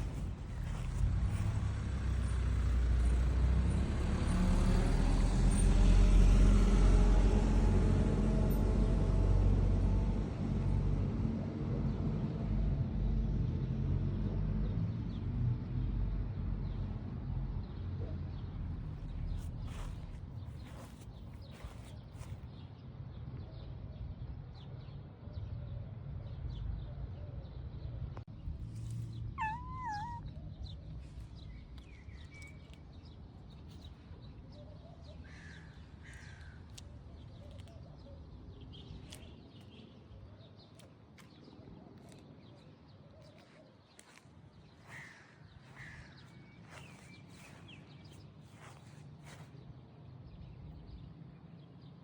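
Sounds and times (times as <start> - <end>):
short harsh animal calls: 29.4 - 30.3
animal wavering cry: 29.4 - 30.4.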